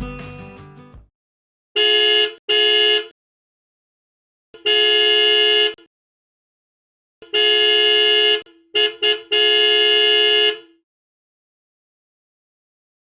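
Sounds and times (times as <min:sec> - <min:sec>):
car horn honking: 0:01.8 - 0:03.1, 0:04.6 - 0:05.8, 0:07.2 - 0:10.8.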